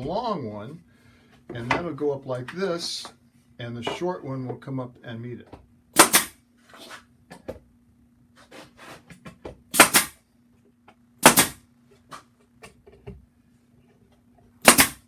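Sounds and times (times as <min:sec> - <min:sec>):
nail gun firing: 0:06.0 - 0:06.4, 0:09.7 - 0:10.2, 0:11.2 - 0:11.6, 0:14.6 - 0:15.0.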